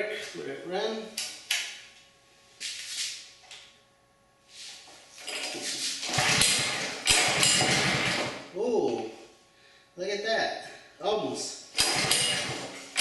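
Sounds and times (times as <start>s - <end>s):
recoil starter rope pulls: 5.3s - 8.4s, 11.8s - 13.0s
engine sputtering: 6.0s - 8.4s, 11.8s - 13.0s.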